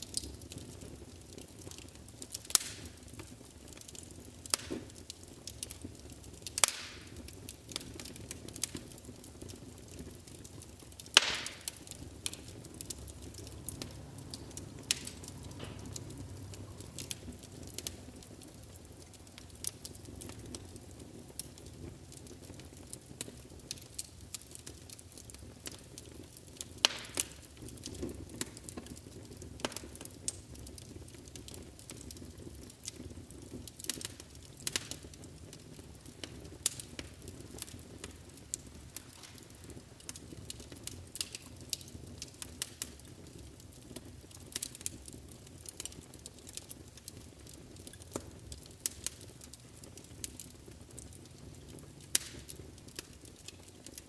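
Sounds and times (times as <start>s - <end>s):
wood fire crackling: 0.0s - 54.0s
fire low rush: 11.6s - 20.7s.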